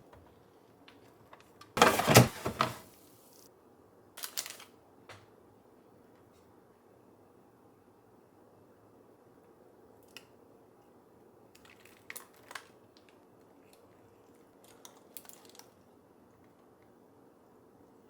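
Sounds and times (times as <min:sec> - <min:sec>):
small clicks and crunches: 0:04.2 - 0:04.7.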